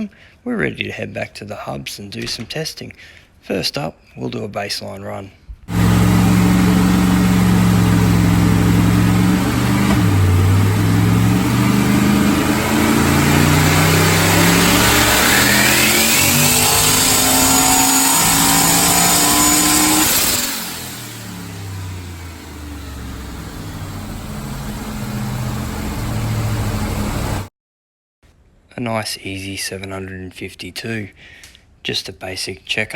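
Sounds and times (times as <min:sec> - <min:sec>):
dyno rollers winding down: 0:05.7 - 0:27.5
engine revving at full throttle: 0:05.7 - 0:27.5.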